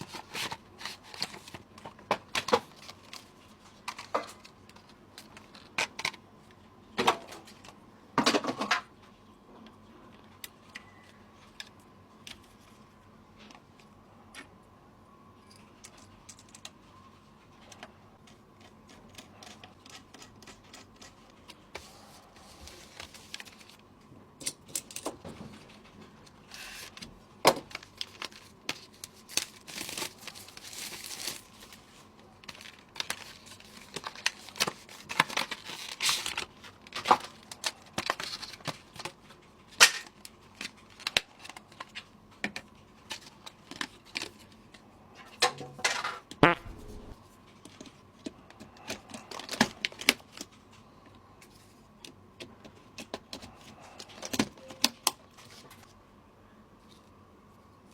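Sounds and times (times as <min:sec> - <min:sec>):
plastic wrap crinkling: 0:27.7 - 0:38.6.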